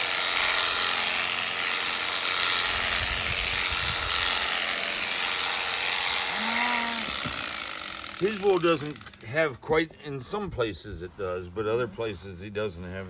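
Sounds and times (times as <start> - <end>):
electric shearing handpiece running: 0.0 - 9.3.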